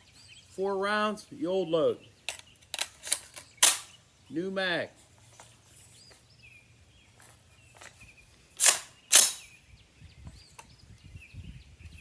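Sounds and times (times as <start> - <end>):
rifle bolt closing: 2.3 - 4.0, 8.6 - 9.5
rifle magazine seated: 2.3 - 4.0, 8.6 - 9.5.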